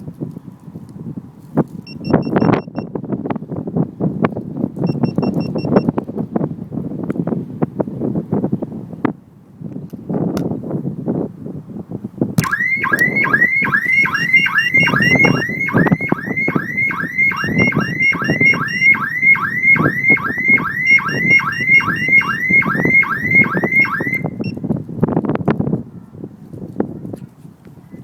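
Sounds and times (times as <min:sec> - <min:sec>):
car alarm whooping siren: 0:12.4 - 0:24.4
steady higher alarm tone: 0:12.4 - 0:24.4.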